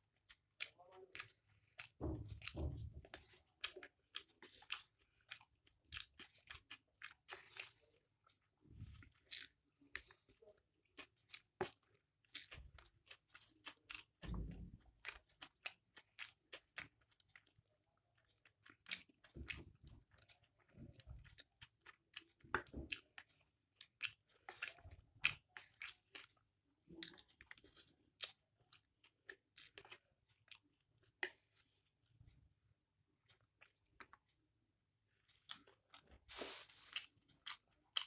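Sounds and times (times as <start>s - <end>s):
wet chewing of noodles: 0.0s - 38.0s.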